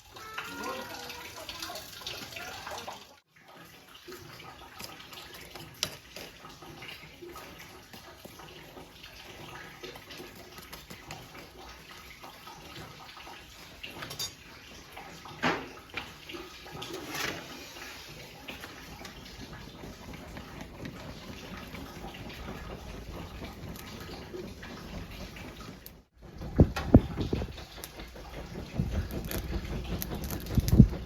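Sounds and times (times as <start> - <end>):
dishes and cutlery clinking: 13.9 - 14.5.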